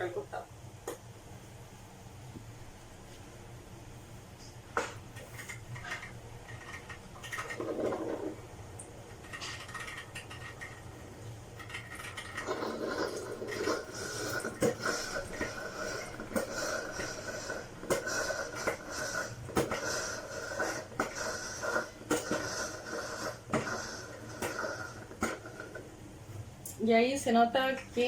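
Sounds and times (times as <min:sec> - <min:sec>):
coffee maker gurgling and sputtering: 0:04.8 - 0:26.0.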